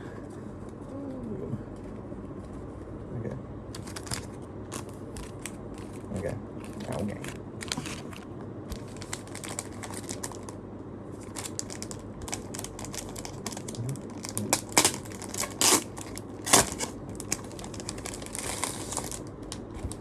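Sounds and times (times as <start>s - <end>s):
packaging rustling and crinkling: 3.7s - 10.6s, 11.2s - 20.0s.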